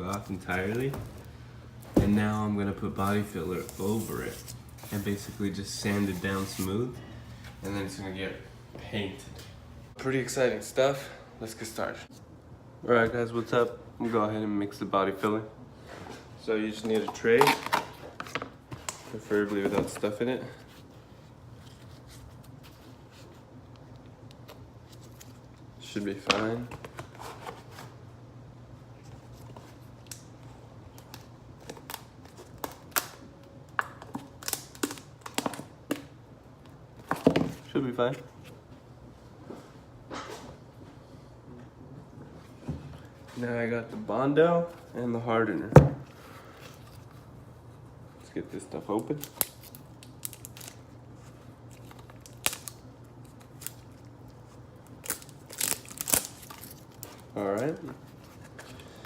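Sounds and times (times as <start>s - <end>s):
packaging crinkling: 49.1s - 58.9s.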